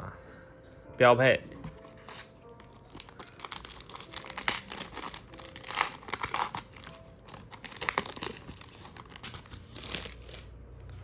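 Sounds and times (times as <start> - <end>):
foil wrapper crinkling and tearing: 2.0 - 10.6.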